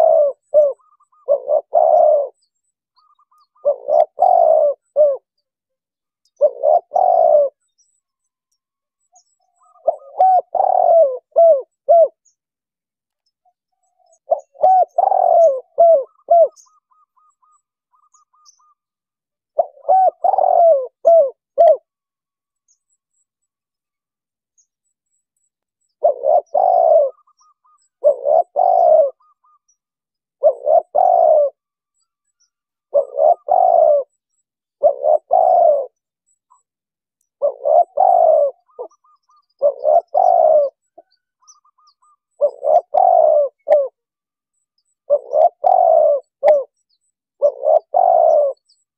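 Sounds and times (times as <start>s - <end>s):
dove cooing: 0.0s - 5.4s, 6.3s - 7.6s, 9.2s - 12.3s, 13.8s - 18.8s, 19.5s - 21.9s, 26.0s - 31.7s, 32.4s - 36.7s, 37.4s - 44.0s, 45.0s - 46.8s, 47.4s - 48.8s
faint small birds chirping: 0.0s - 48.9s.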